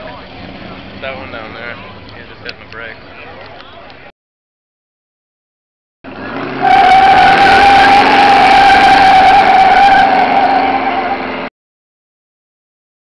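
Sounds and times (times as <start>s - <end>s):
car engine at high revs: 6.1s - 11.5s
tyres screeching: 6.6s - 11.5s.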